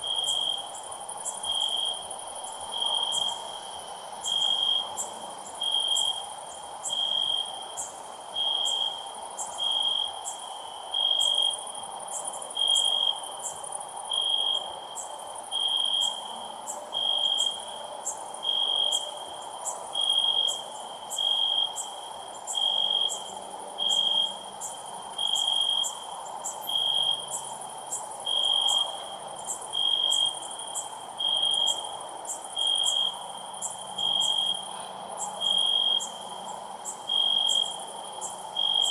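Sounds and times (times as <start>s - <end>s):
background hiss: 0.0s - 38.9s
cricket chirping: 0.0s - 38.9s.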